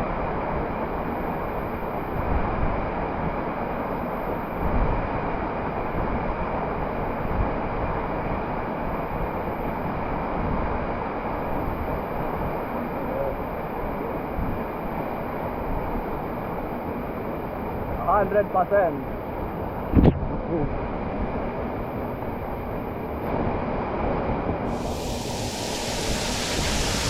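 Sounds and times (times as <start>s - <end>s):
steady rushing noise: 0.0s - 27.0s.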